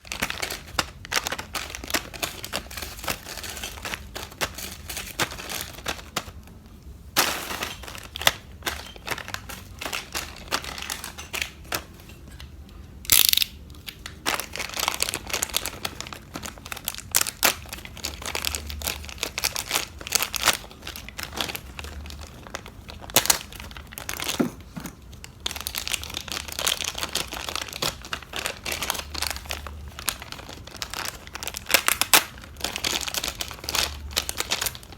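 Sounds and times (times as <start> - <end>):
toy packaging crinkling: 0.0 - 6.5, 7.2 - 12.4, 13.1 - 24.5, 25.1 - 34.9
small packaging clicks: 7.8 - 24.4, 25.1 - 34.9.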